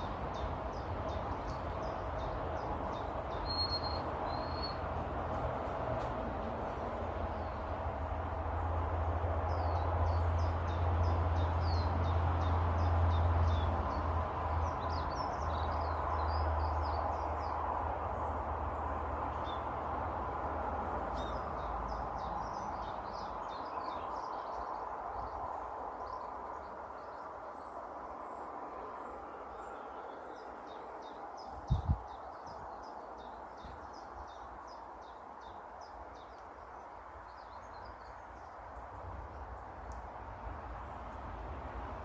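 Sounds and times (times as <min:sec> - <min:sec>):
small birds chirping: 0:00.0 - 0:04.9, 0:21.0 - 0:40.1.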